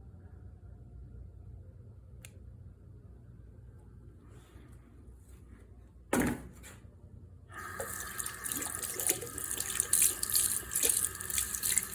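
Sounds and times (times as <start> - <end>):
tap water running into sink: 7.6 - 11.9.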